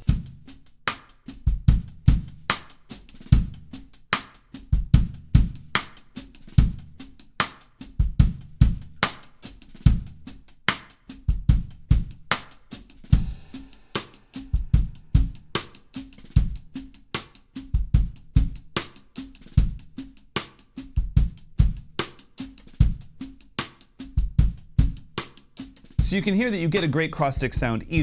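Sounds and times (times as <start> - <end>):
bass drum: 0.0 - 0.6, 1.4 - 2.6, 3.3 - 3.9, 4.8 - 5.9, 6.6 - 7.1, 8.0 - 9.2, 9.8 - 10.4, 11.3 - 12.5, 13.1 - 13.9, 14.5 - 15.6, 16.2 - 16.8, 17.8 - 18.8, 19.6 - 20.0, 21.0 - 22.0, 22.8 - 23.2, 24.2 - 25.2, 26.0 - 28.0.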